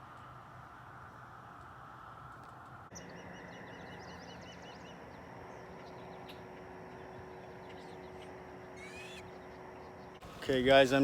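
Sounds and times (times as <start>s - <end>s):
birds chirping: 2.9s - 11.0s
background hiss: 10.1s - 11.0s.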